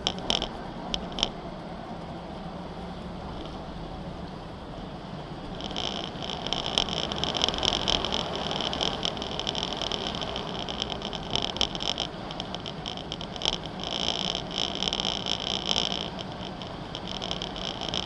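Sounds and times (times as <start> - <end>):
off-road vehicle engine and tyres: 0.0 - 18.0
pulsing high-pitched buzzing: 5.6 - 18.0.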